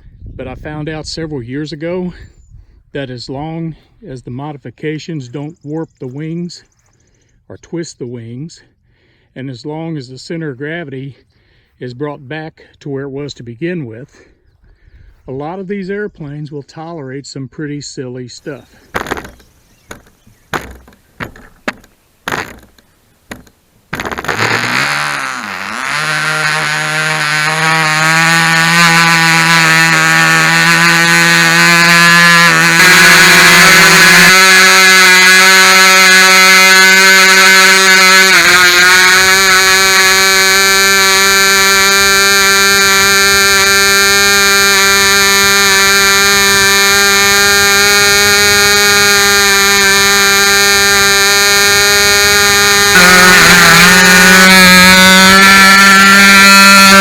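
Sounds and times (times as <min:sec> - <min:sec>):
model airplane engine buzzing: 0:18.4 - 0:57.0.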